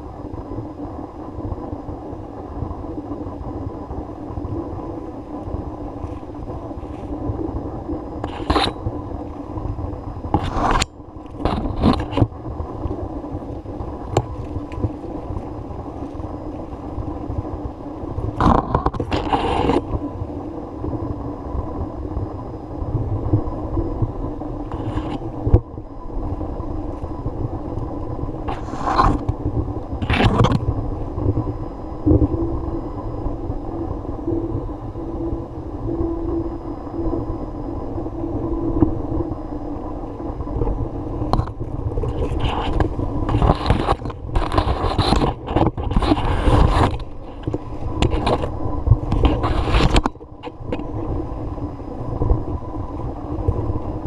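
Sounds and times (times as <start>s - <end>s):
steady low rumble: 0.0s - 54.0s
scraping or rustling bursts: 42.0s - 48.5s.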